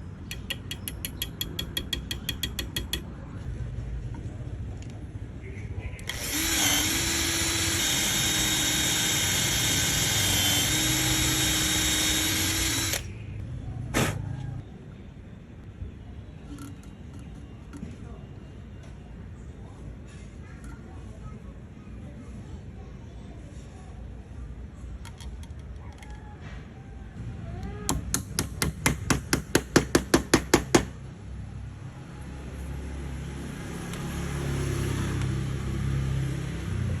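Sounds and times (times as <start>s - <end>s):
hammer striking wooden dowel: 0.3s - 3.0s, 27.9s - 30.9s
power tool motor running: 6.0s - 13.1s.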